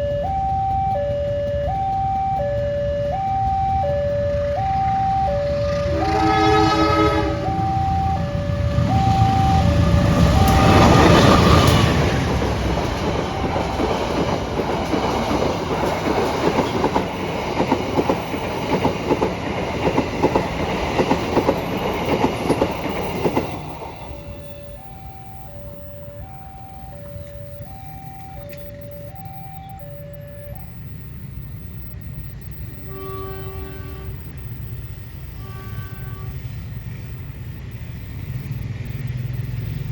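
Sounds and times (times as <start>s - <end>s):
train passing fast: 0.0s - 39.9s
two-tone level crossing alarm: 0.0s - 39.9s
train horn blast: 5.5s - 8.2s, 8.8s - 12.0s, 32.8s - 34.4s, 35.4s - 36.5s
wheels clattering over rail joints: 8.8s - 27.4s.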